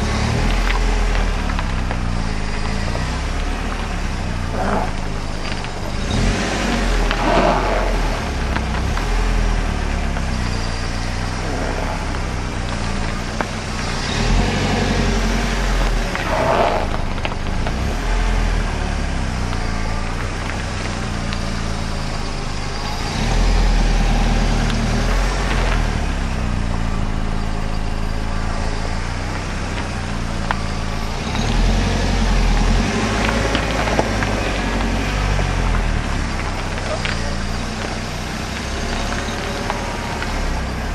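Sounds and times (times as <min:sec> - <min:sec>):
tyre scraping along kerb: 0:00.0 - 0:18.6
car low rumble: 0:00.0 - 0:40.9.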